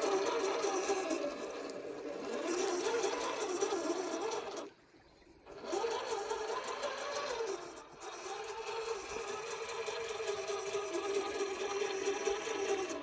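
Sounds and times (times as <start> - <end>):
electric motor whining: 0.0 - 4.8, 5.5 - 13.0.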